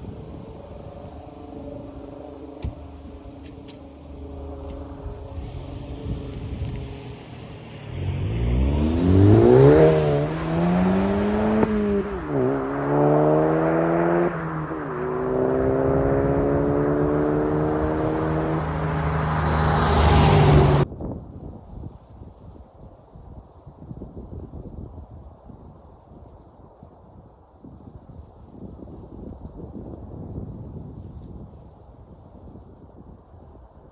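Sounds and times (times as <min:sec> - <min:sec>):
car exhaust accelerating: 0:00.0 - 0:20.9.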